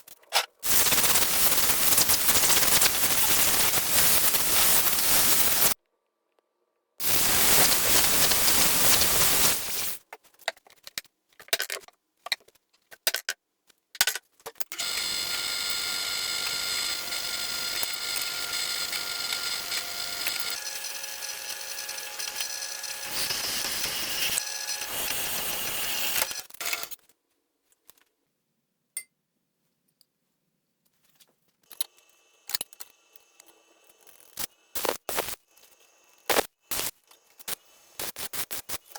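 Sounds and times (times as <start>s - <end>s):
power tools cutting wood: 0.7s - 5.8s, 14.7s - 26.9s
motor-driven tool whining: 14.8s - 26.9s.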